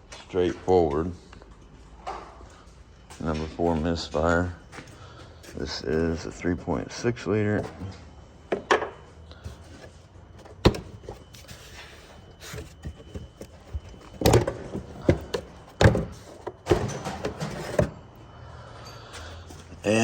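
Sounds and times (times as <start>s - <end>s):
faint room hum: 0.0s - 20.0s
objects knocking and clunking: 7.5s - 18.1s.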